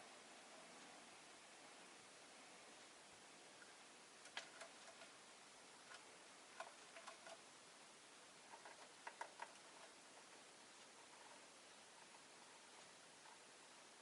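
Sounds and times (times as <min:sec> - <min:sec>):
low steady hiss: 0:00.0 - 0:14.0
bird clicks and ticks: 0:04.2 - 0:05.2, 0:05.8 - 0:07.4, 0:08.5 - 0:13.4.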